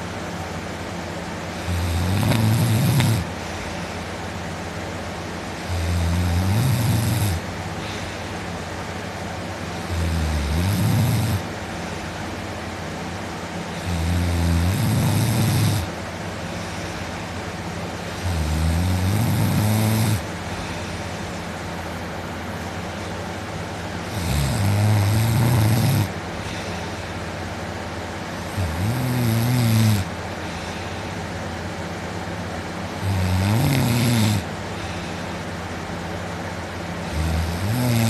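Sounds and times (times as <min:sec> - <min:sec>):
man snoring loudly: 0:01.5 - 0:03.4, 0:05.6 - 0:08.0, 0:09.7 - 0:11.5, 0:13.7 - 0:16.9, 0:18.0 - 0:21.0, 0:24.0 - 0:26.8, 0:28.3 - 0:30.6, 0:33.0 - 0:35.2, 0:37.0 - 0:38.0.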